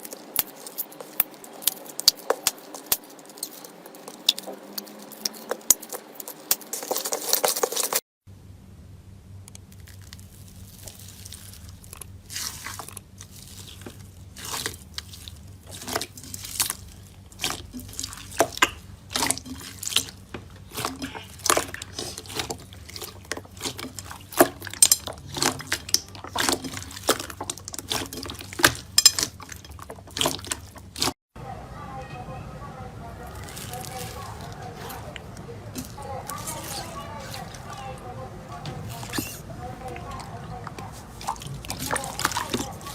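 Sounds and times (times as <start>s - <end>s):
slime squelching with wet pops: 0.0s - 8.0s, 9.6s - 31.1s, 38.8s - 42.9s
faint low hum: 8.3s - 42.9s.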